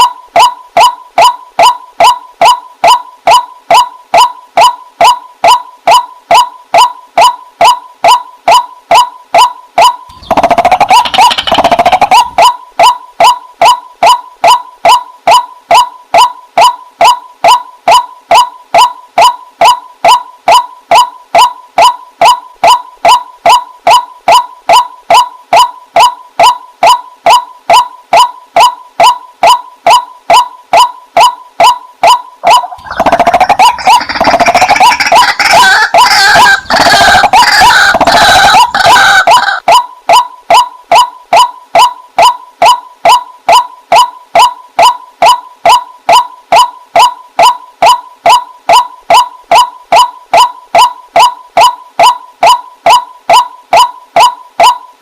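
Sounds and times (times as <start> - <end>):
overlapping bird calls: 0.0 - 26.1, 32.1 - 44.5
waterhen calling: 9.8 - 13.0, 32.4 - 39.7.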